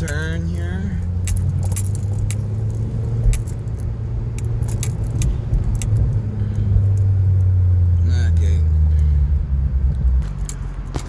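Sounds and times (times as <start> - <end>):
light metallic clicks and jingling: 0.0 - 7.6, 10.2 - 11.0
car engine droning: 0.0 - 11.0.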